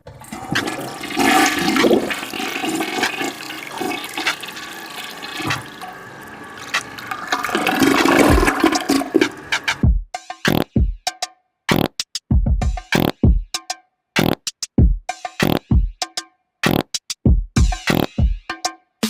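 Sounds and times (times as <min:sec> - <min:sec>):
toilet flushing: 0:00.0 - 0:09.8.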